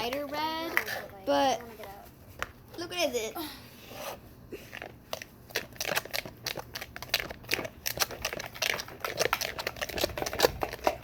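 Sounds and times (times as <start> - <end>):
slime squishing with wet crackles: 4.6 - 11.0.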